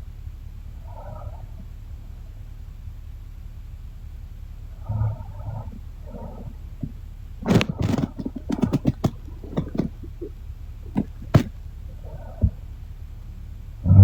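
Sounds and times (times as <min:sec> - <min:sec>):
sharp clicks and knocks: 0:06.8 - 0:11.6.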